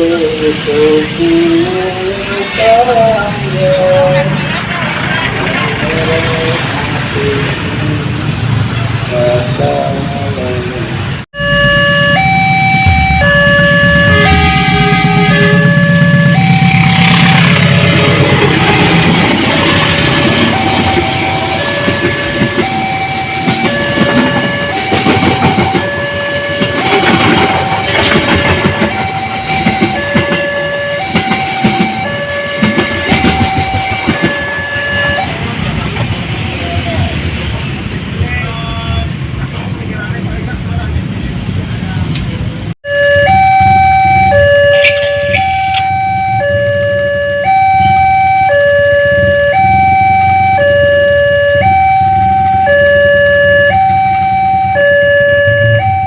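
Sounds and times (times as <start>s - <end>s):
low rumble of engines: 0.0s - 56.0s
level-crossing alarm two-tone: 11.3s - 17.7s, 18.8s - 35.4s, 42.8s - 56.0s
train wheels clattering on rails: 18.0s - 34.7s.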